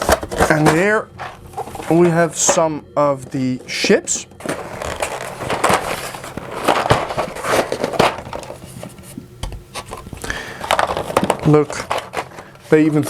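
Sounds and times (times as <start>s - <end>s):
plastic tray clicks and rustles: 4.4s - 12.5s.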